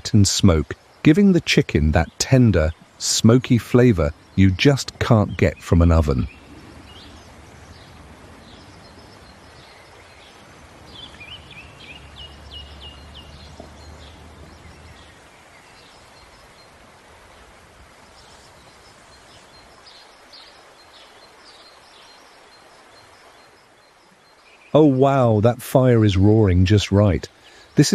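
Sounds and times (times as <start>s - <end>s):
quiet outdoor background noise: 0.0s - 27.9s
small birds chirping: 0.0s - 27.9s.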